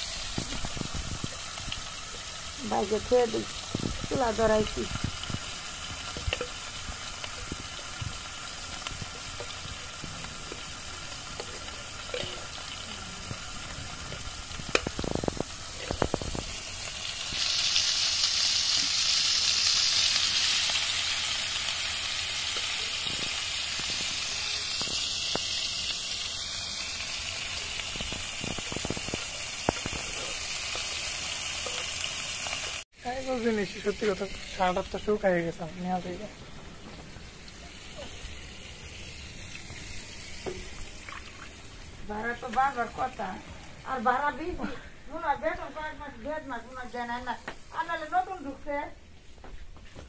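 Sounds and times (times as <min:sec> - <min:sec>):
fish frying in hot oil: 0:00.0 - 0:36.3, 0:37.1 - 0:44.4.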